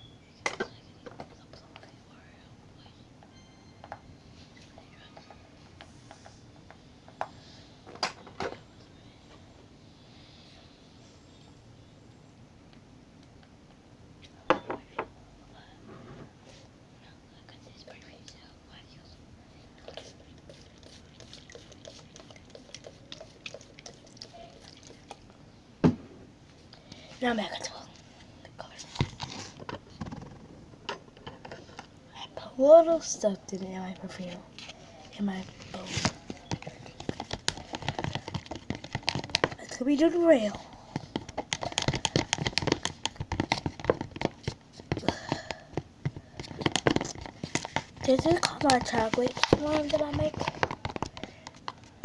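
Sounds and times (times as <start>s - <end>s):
glue stirred with spoon: 19.8s - 25.2s, 34.2s - 45.4s, 46.3s - 51.9s.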